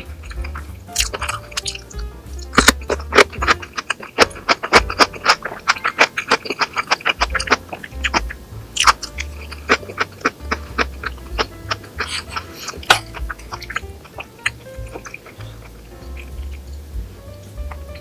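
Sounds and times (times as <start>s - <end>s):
background music: 0.0s - 18.0s
person chewing food: 2.6s - 16.6s.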